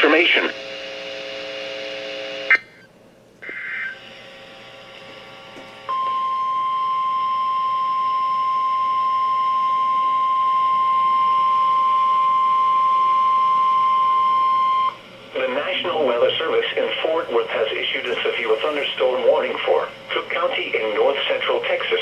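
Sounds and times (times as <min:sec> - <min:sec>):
steady alarm tone: 0:05.9 - 0:20.5.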